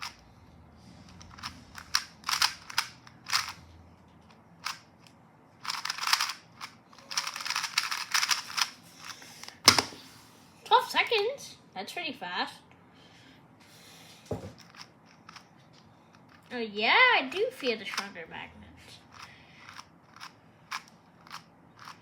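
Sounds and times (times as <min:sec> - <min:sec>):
plastic puzzle cube clicking: 0:01.3 - 0:03.6, 0:04.6 - 0:04.9, 0:05.6 - 0:09.9, 0:14.6 - 0:15.5, 0:19.1 - 0:22.0.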